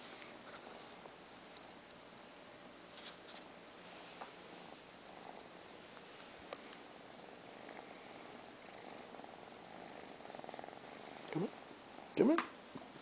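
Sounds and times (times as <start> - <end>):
cat purring softly: 3.3 - 13.0.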